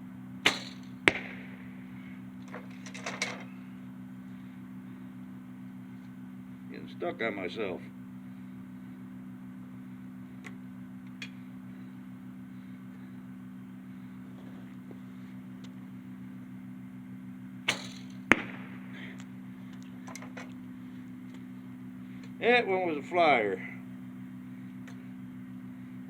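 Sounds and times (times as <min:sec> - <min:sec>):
steady low hum: 0:00.0 - 0:26.0
arrow hitting target smack: 0:00.5 - 0:01.6, 0:17.7 - 0:18.8.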